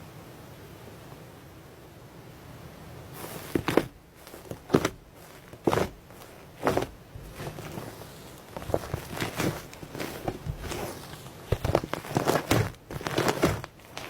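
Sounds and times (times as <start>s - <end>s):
faint hiss: 0.0s - 14.0s
slime crackling and squishing: 3.2s - 14.0s.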